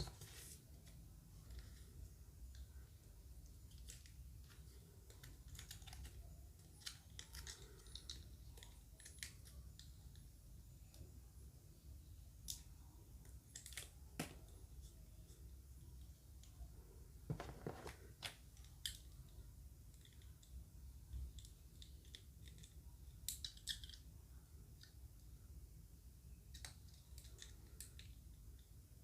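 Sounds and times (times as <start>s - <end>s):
low steady hum: 0.0s - 29.0s
plastic parts clicking and crinkling: 3.4s - 10.3s, 12.4s - 14.9s, 17.3s - 24.1s, 26.5s - 28.7s.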